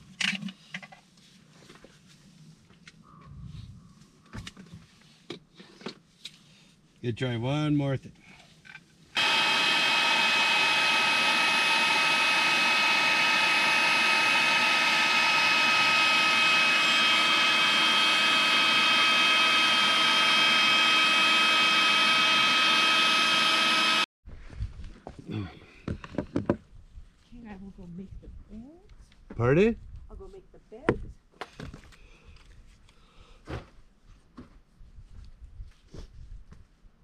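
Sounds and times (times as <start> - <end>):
electric air pump whining: 9.2 - 24.1.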